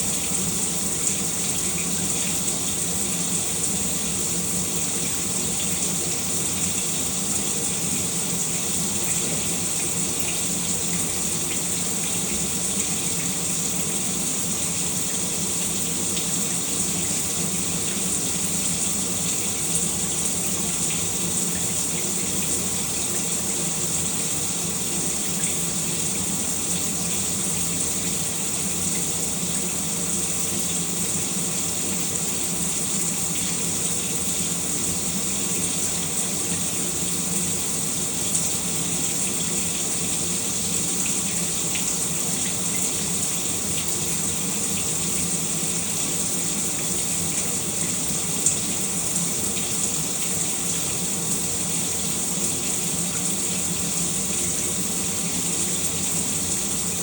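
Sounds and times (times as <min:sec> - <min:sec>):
shower water running: 0:00.0 - 0:57.0.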